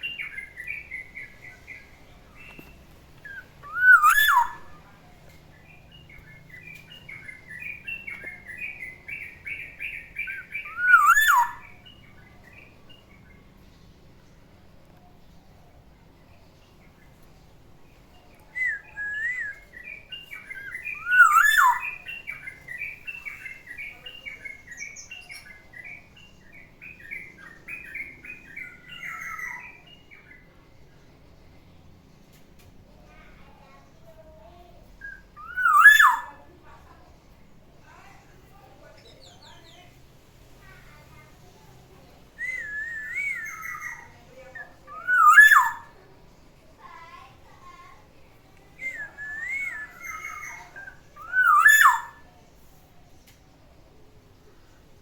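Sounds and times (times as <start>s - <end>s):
bird singing fluty whistles: 3.2s - 4.8s, 6.6s - 12.0s, 18.5s - 23.9s, 35.0s - 36.3s, 42.4s - 44.1s, 44.9s - 45.9s, 48.8s - 52.2s.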